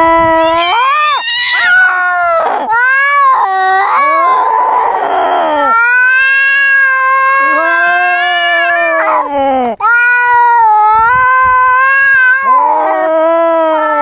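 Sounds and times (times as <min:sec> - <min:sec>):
cats yowling: 0:00.0 - 0:14.0
cat hissing: 0:00.4 - 0:02.8.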